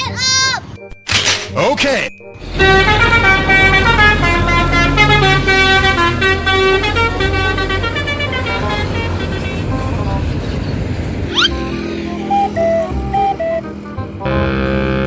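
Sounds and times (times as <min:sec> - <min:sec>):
musical bus horn tune: 0:02.4 - 0:10.6, 0:11.5 - 0:15.0.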